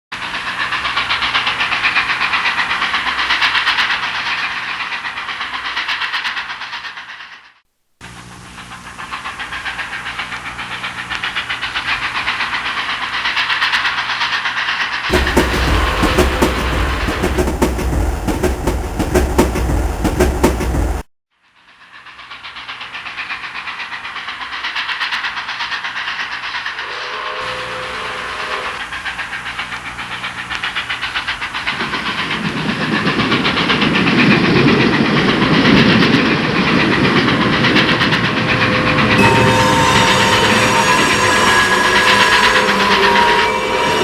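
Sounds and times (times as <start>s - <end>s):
deep train rumble: 0.2s - 7.3s, 8.1s - 21.1s, 23.0s - 44.0s
train clickety-clack on rails: 0.2s - 7.6s, 8.4s - 21.1s, 21.7s - 44.0s
whistle-like tones: 26.7s - 28.8s, 38.9s - 44.0s.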